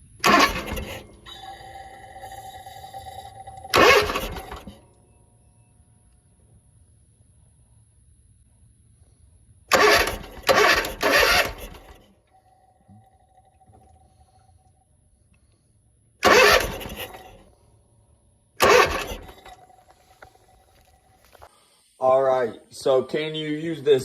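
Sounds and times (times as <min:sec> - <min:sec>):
mower engine cranking on starter: 0:00.0 - 0:05.0, 0:09.7 - 0:12.5, 0:16.2 - 0:17.5, 0:18.6 - 0:21.6.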